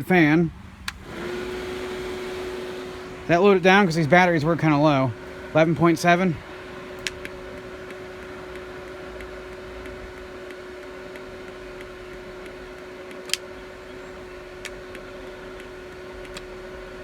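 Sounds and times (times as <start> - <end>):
small fan humming: 0.0 - 17.0
sharp click: 0.8 - 1.0, 7.0 - 13.5.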